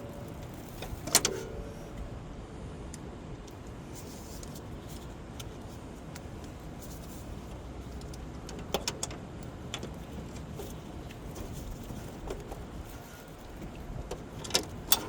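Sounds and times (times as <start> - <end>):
tools and metal parts clinking: 0.0 - 2.1.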